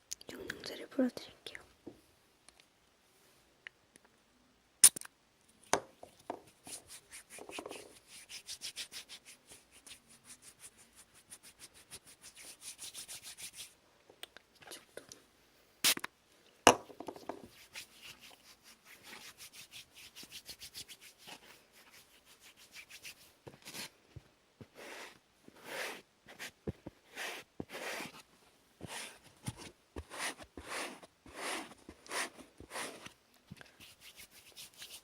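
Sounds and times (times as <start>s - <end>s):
rubbing and scratching on hair: 6.4s - 13.8s, 17.3s - 24.0s, 33.7s - 35.0s.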